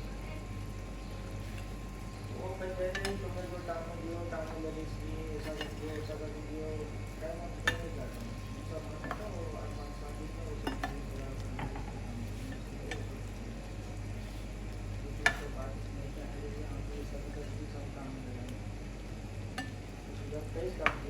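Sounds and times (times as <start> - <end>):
spoon scraping a pan: 5.4 - 6.2.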